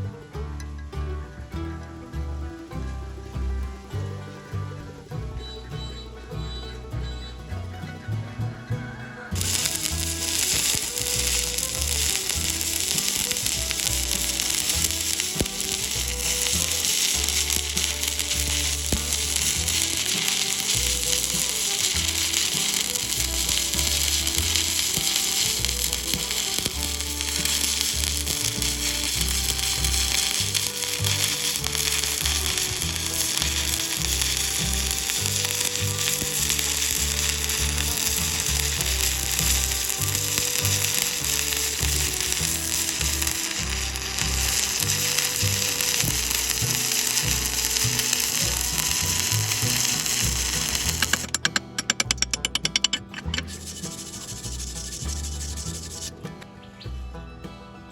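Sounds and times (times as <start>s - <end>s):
welding arc crackling: 9.3s - 56.1s.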